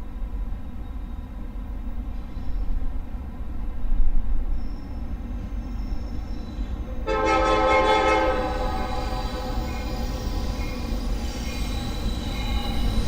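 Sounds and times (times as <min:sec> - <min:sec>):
diesel freight train rumbling: 0:00.0 - 0:13.0
locomotive air horn chord: 0:07.1 - 0:10.2.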